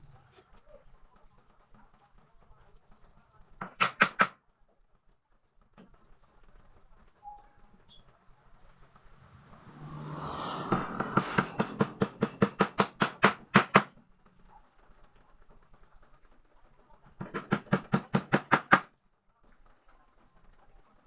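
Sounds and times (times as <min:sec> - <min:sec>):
hammer knocking on wood: 0:10.1 - 0:13.9.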